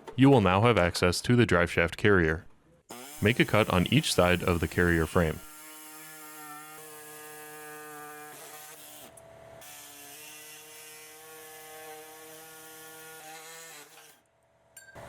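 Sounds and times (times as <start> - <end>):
power tool cutting metal: 2.9 - 14.2.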